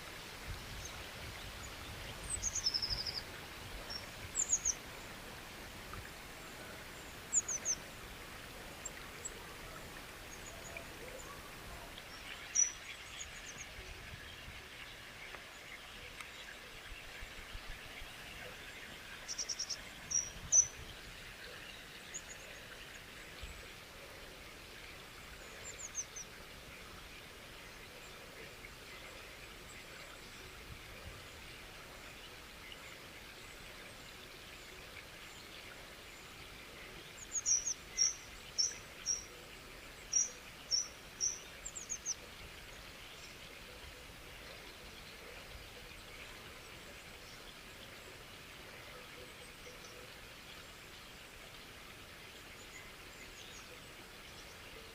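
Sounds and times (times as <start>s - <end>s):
outdoor background hiss: 0.0s - 54.9s
small birds chirping: 0.7s - 23.7s, 32.0s - 48.3s.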